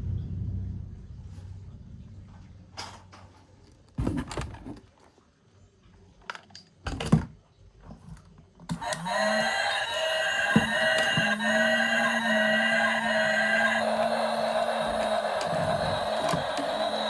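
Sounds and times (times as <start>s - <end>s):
toy electronic sound effect: 8.7s - 17.0s.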